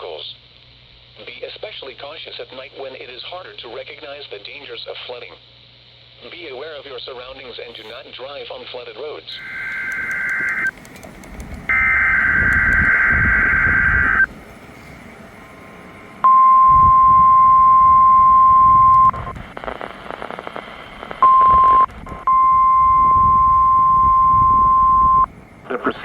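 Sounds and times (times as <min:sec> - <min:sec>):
radio static: 0:09.3 - 0:10.7, 0:11.7 - 0:14.3, 0:16.3 - 0:26.0
steady warning alarm tone: 0:09.3 - 0:19.4, 0:20.8 - 0:26.0
raspy digital data burst: 0:09.4 - 0:10.7, 0:11.7 - 0:14.3.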